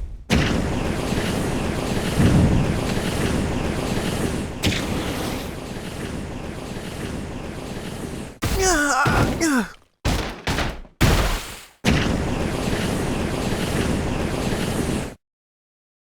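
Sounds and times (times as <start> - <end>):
person sighing or groaning: 8.6 - 9.8.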